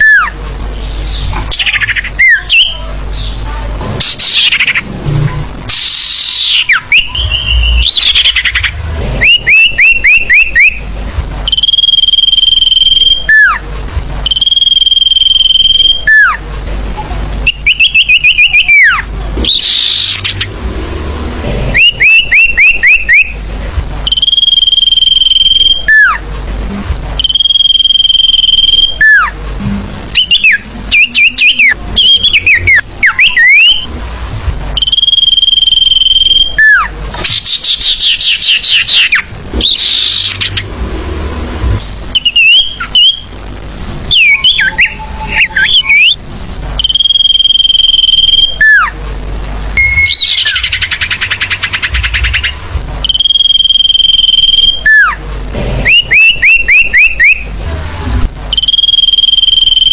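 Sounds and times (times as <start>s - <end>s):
bird song whistles: 4.0s - 4.8s, 5.7s - 10.8s, 11.4s - 13.6s, 14.2s - 16.4s, 17.4s - 20.5s, 21.8s - 23.4s, 24.0s - 26.2s, 27.2s - 29.3s, 30.2s - 33.9s, 34.8s - 40.6s, 41.8s - 43.3s, 44.1s - 46.2s, 46.8s - 48.9s, 49.8s - 55.2s, 55.8s - 57.5s, 58.5s - 59.9s.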